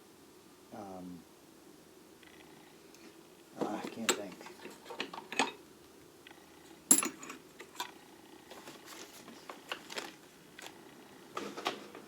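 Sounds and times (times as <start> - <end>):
metal tools clinking: 3.9 - 5.6, 6.9 - 7.9.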